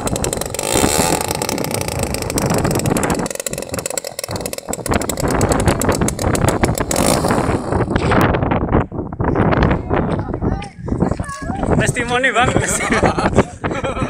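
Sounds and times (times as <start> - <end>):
model plane engine running: 0.0 - 7.9.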